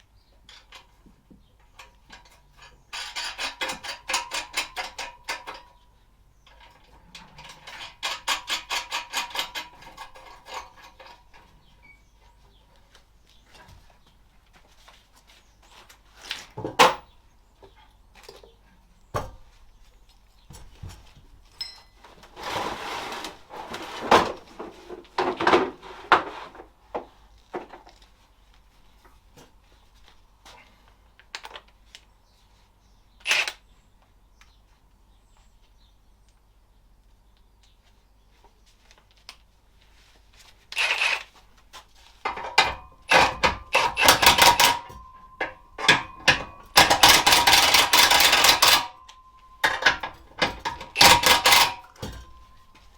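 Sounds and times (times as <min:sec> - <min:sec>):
metal parts clattering and scraping: 0:01.7 - 0:05.6, 0:06.4 - 0:12.1, 0:40.7 - 0:52.9.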